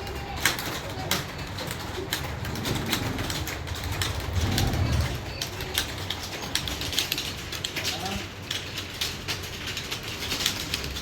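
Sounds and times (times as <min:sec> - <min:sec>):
keyboard typing: 0:00.0 - 0:11.0
low rumbling: 0:02.2 - 0:05.5.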